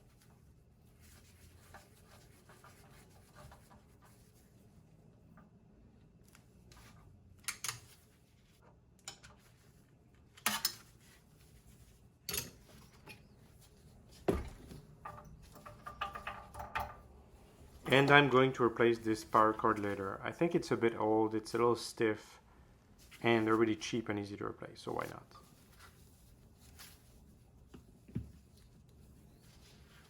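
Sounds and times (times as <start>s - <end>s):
dull thump: 14.2s - 14.8s.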